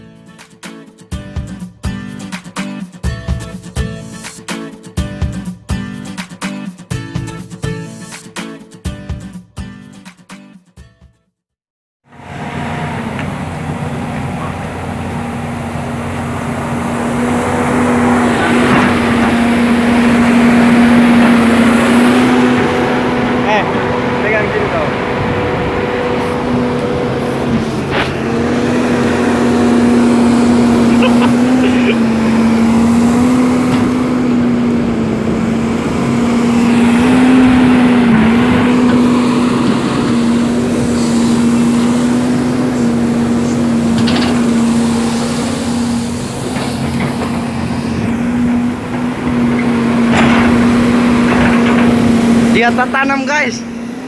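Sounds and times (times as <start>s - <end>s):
excavator diesel engine whining: 12.1s - 54.0s.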